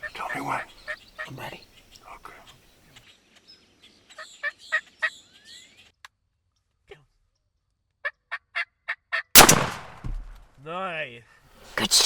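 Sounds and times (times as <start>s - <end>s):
shotgun blast: 9.4s - 10.4s.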